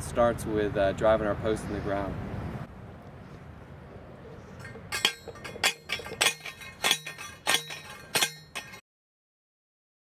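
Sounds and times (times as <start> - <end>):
metal post strikes ringing: 4.6 - 8.8.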